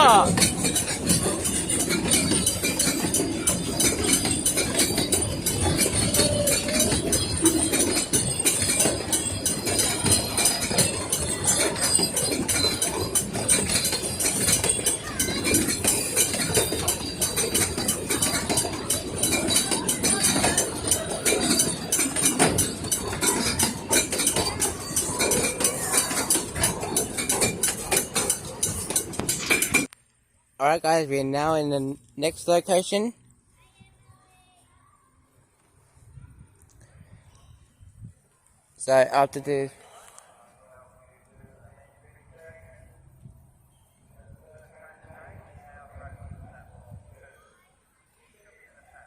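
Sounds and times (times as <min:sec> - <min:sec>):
train wheels clattering and clanking: 0:00.0 - 0:29.9.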